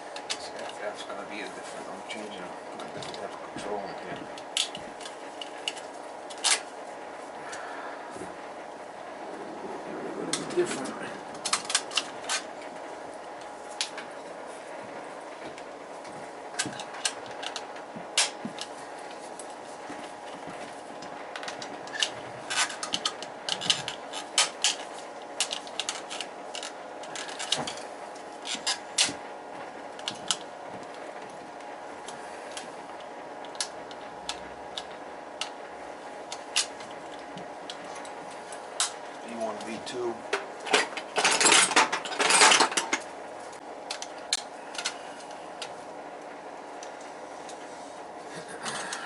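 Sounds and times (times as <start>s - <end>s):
steady hum: 0.0s - 49.0s.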